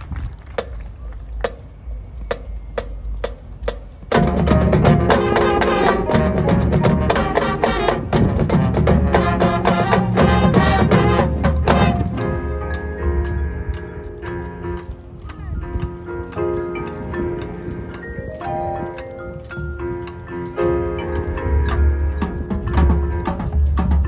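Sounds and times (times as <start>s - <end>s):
marching band playing with drums: 0.6s - 24.0s
percussion click keeping beat: 9.2s - 24.0s.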